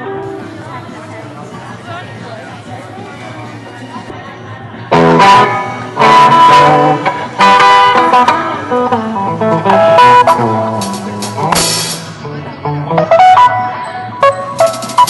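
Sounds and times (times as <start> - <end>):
electric guitar chords: 0.0 - 1.0, 4.9 - 15.0
drums: 0.0 - 15.0.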